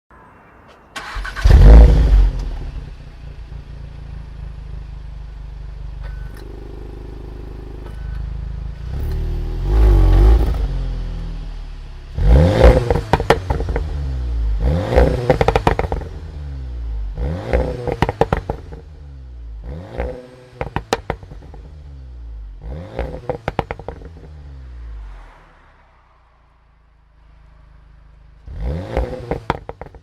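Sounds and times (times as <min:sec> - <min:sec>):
car engine starting and idling: 0:00.8 - 0:30.0
car engine revving: 0:01.0 - 0:03.0, 0:06.0 - 0:30.0
exhaust crackles and pops: 0:12.6 - 0:14.0, 0:15.1 - 0:16.2, 0:17.8 - 0:18.9, 0:23.0 - 0:24.3, 0:28.9 - 0:30.0.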